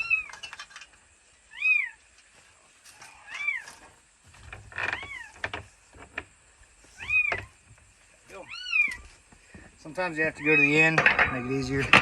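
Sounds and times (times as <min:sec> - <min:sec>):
cat meowing: 0:08.4 - 0:09.1.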